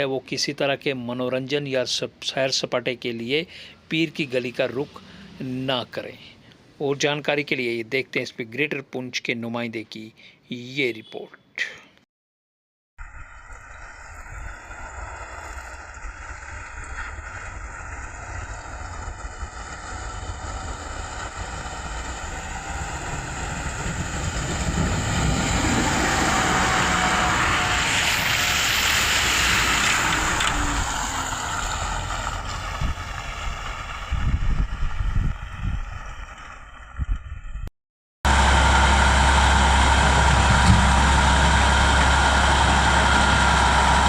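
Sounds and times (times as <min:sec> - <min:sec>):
wind on microphone: 0:13.0 - 0:31.1, 0:32.6 - 0:37.7
vehicle engine running: 0:13.0 - 0:37.0, 0:38.3 - 0:44.0.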